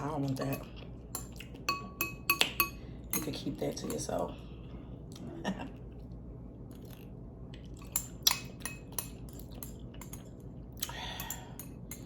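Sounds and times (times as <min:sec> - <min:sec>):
utensil clinking against a bowl: 0:00.0 - 0:04.3, 0:07.8 - 0:12.0.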